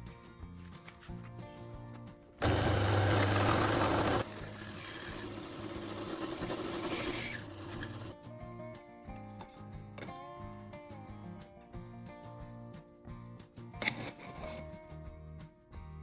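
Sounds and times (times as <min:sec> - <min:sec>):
high squeal: 0:02.4 - 0:08.1
power tool working metal: 0:02.4 - 0:08.2.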